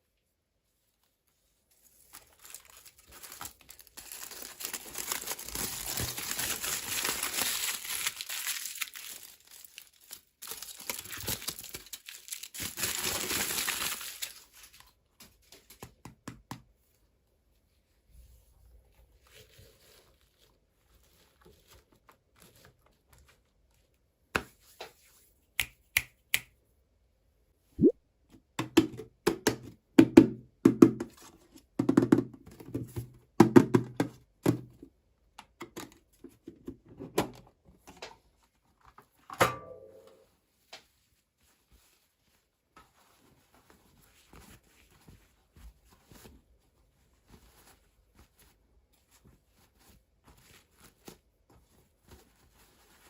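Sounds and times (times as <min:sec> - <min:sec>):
wrapper tearing and crinkling: 0:02.1 - 0:14.8.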